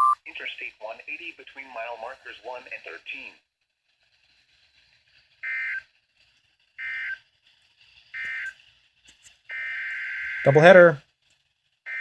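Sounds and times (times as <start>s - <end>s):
buzzing data bursts: 5.4s - 5.9s, 6.8s - 7.3s, 8.1s - 8.6s, 9.5s - 11.0s.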